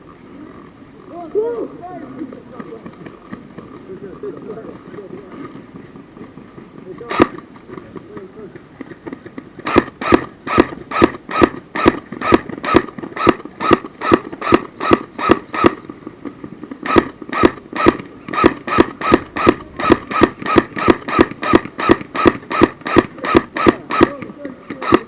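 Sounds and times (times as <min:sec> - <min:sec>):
airsoft gun shots: 0:07.0 - 0:08.3, 0:09.6 - 0:15.9, 0:16.8 - 0:25.0.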